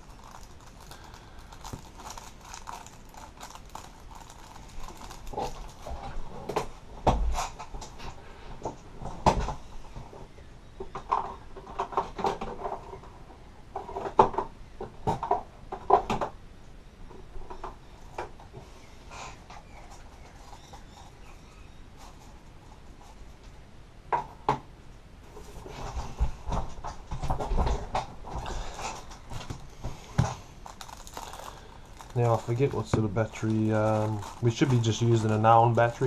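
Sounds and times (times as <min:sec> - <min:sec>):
small parts rattling and clicking: 0:00.0 - 0:06.2, 0:28.4 - 0:36.0.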